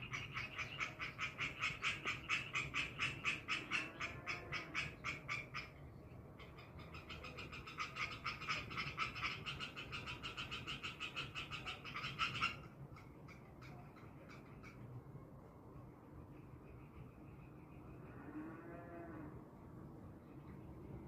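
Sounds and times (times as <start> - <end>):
pulsed animal calls: 0.0 - 5.8.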